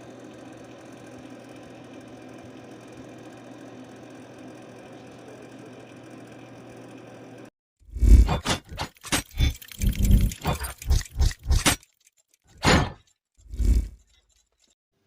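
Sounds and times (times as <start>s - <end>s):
cooling fan humming and rattling: 0.0s - 7.5s.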